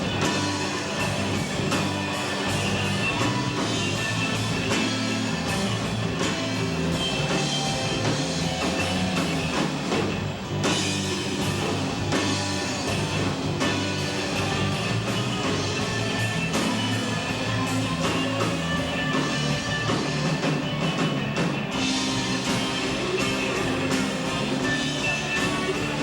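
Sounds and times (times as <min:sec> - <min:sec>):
drum kit beat: 0:00.0 - 0:26.0
live rock band playing: 0:00.0 - 0:26.0.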